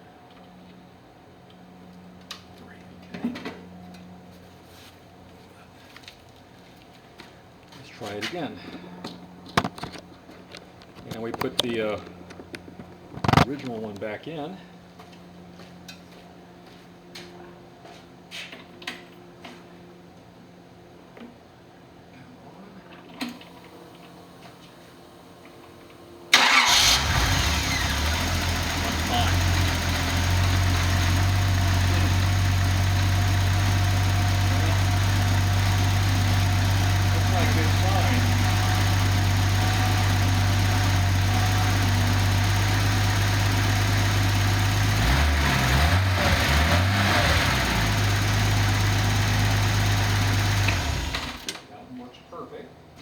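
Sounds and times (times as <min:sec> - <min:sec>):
engine idling: 0:26.3 - 0:51.5
engine cranking and starting: 0:26.3 - 0:51.6.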